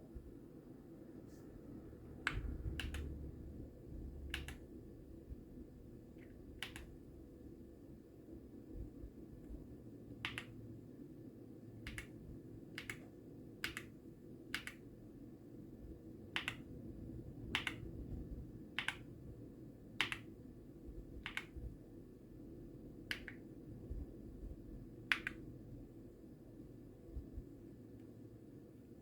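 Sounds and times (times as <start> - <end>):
mechanical keyboard key clicks: 10.2 - 10.5, 11.8 - 12.2, 17.5 - 17.8, 18.8 - 19.1, 20.0 - 20.3.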